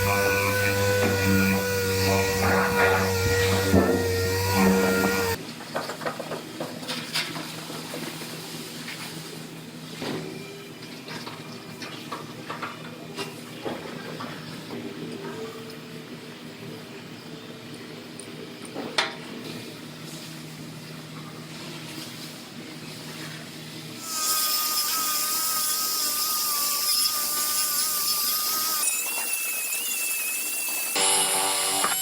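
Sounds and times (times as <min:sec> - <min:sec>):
power tool hissing and whining: 0:00.0 - 0:05.4, 0:24.0 - 0:32.0
steady low hum: 0:00.0 - 0:05.4.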